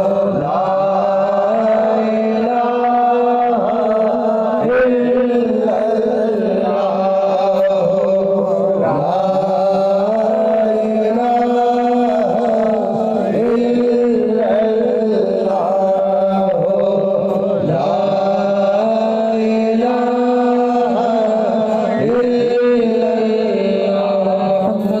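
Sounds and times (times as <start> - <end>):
person chanting a wavering melody: 0.0 - 25.0
steady held drone: 0.0 - 25.0.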